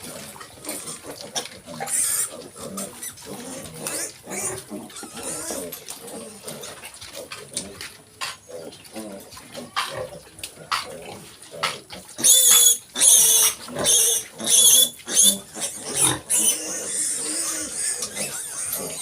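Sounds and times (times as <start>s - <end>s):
pigs grunting: 0.0s - 19.0s
piglets squealing: 0.7s - 6.8s, 12.0s - 19.0s.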